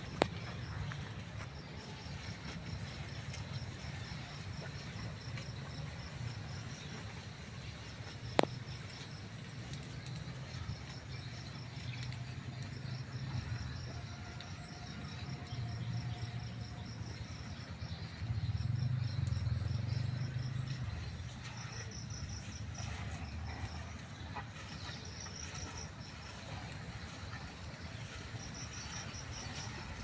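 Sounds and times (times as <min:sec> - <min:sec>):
low rumble: 0:08.6 - 0:30.0.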